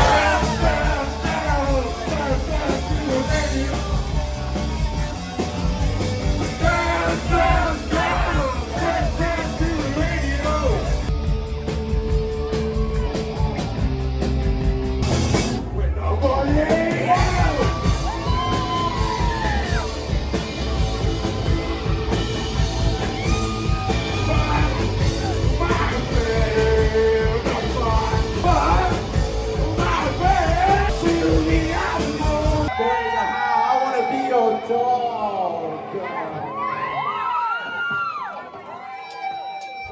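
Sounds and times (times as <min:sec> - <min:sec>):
sung vocal over driving beat: 0:00.0 - 0:04.5, 0:06.4 - 0:11.1, 0:15.9 - 0:19.9, 0:23.4 - 0:32.7.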